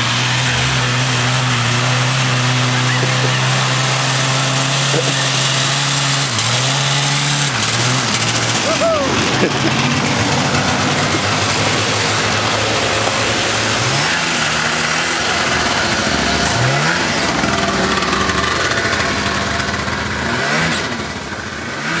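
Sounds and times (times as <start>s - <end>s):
motorcycle engine revving: 0.0s - 22.0s.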